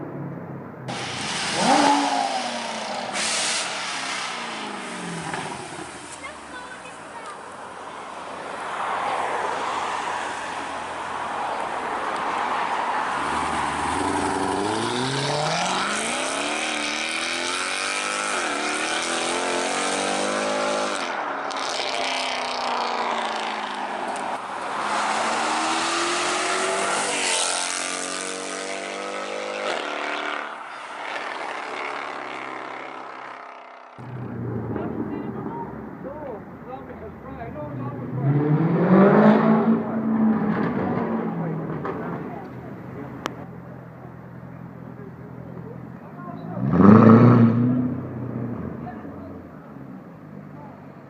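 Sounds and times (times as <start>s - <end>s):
car engine accelerating hard: 0.0s - 6.0s, 13.2s - 23.7s, 37.1s - 43.5s, 46.3s - 50.0s.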